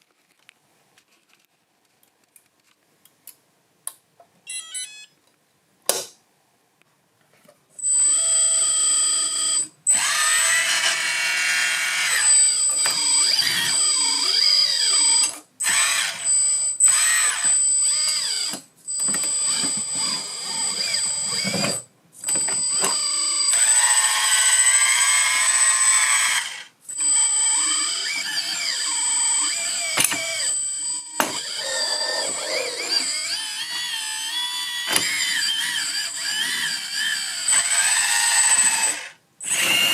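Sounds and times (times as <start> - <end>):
hydraulic pump motor whining: 10.0 - 16.3, 16.9 - 39.9.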